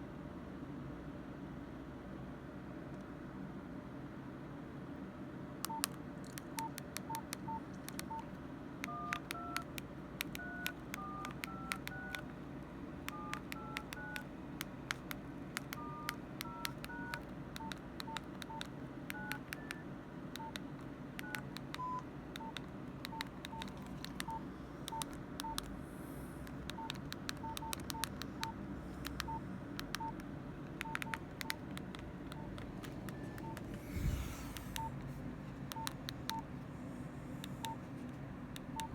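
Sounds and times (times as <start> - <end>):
phone key clicks and beeps: 5.7 - 12.3, 13.0 - 19.8, 20.4 - 25.7, 26.4 - 33.7, 35.7 - 36.5, 38.6 - 38.9
two-note dialling tones: 8.8 - 12.3, 13.1 - 14.3, 15.6 - 19.8.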